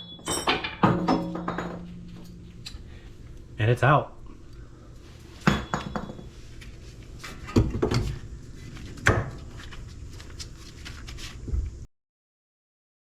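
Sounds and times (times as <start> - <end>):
metal tools clanking: 0.0 - 2.9, 5.4 - 6.3.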